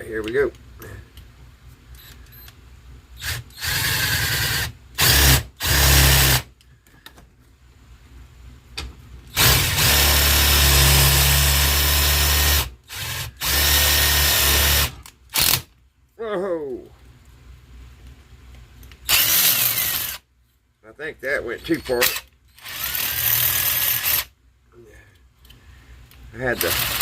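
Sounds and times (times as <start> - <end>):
cordless drill boring wood: 3.2 - 6.5, 9.4 - 15.6, 19.1 - 20.2, 22.0 - 24.3, 26.6 - 27.0.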